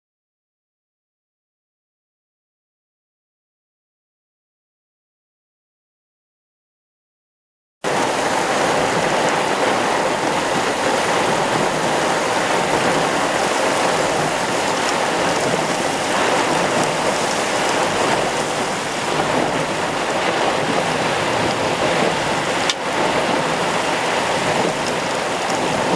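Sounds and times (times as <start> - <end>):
heavy rain: 7.8 - 25.9
floodwater rushing: 7.9 - 25.9.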